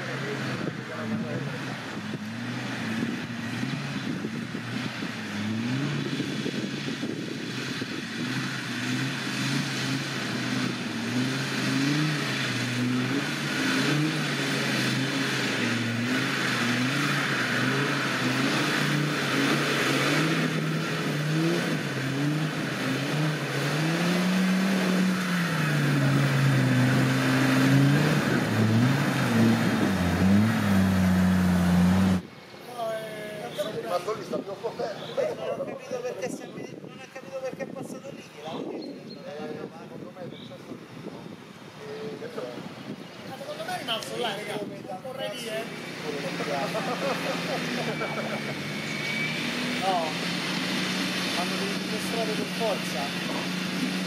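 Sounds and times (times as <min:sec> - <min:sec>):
off-road vehicle engine revving: 0:00.0 - 0:32.3, 0:43.5 - 0:54.0.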